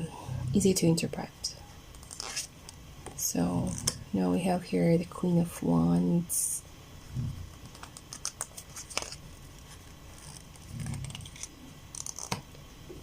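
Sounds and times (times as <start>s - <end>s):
cards sliding and clicking: 2.0s - 2.5s.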